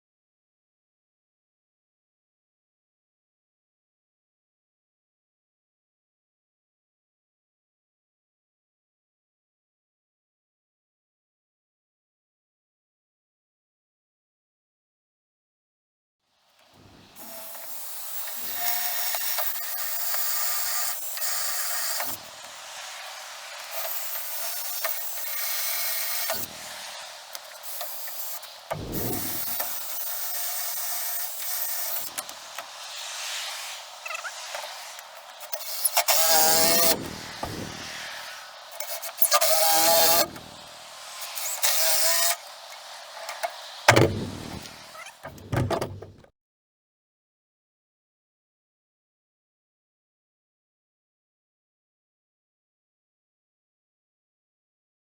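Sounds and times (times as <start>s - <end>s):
power tool running: 23.6s - 32.3s, 35.6s - 37.9s, 38.8s - 40.7s
wood board knocks: 43.9s - 46.3s.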